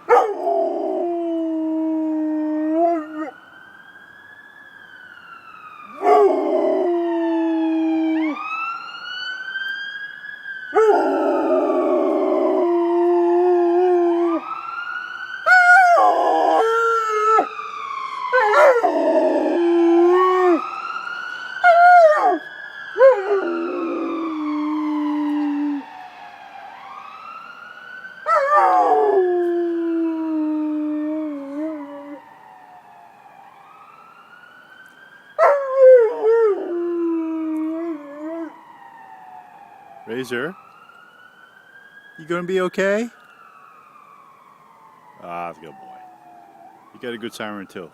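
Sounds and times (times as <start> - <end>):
ambulance siren wailing: 0.0 - 47.9
dog howling: 0.1 - 3.3, 5.9 - 8.4, 10.8 - 14.5, 15.4 - 17.5, 18.3 - 20.7, 21.6 - 22.4, 23.0 - 25.8, 28.3 - 32.2, 35.4 - 38.6.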